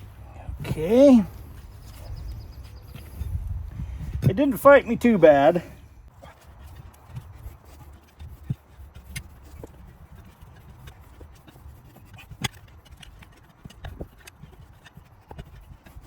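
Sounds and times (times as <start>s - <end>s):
tire and rim knocking and clunking: 6.1s - 16.0s.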